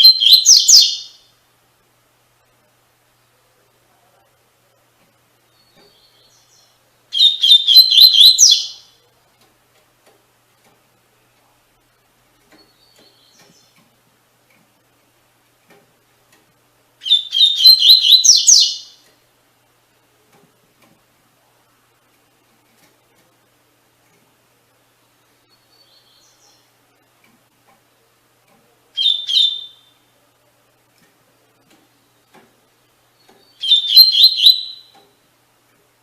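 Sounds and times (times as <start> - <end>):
bird singing high sliding notes: 33.5 - 35.0.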